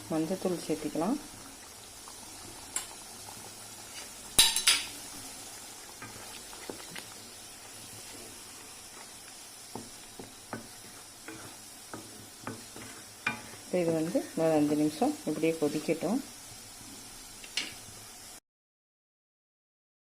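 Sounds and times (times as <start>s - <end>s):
curry cooking low hiss: 0.0s - 18.4s
spoon tapping and scraping pan: 2.7s - 3.0s, 3.9s - 5.0s, 9.3s - 13.7s, 17.4s - 17.8s
metal spoon clattering on pan: 4.4s - 4.9s.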